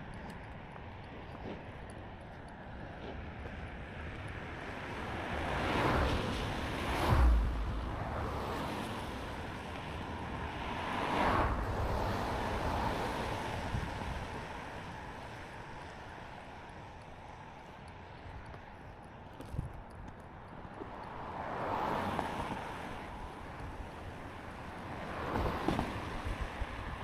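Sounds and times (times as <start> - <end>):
vehicles passing on wet road: 3.8 - 17.0, 20.8 - 27.0.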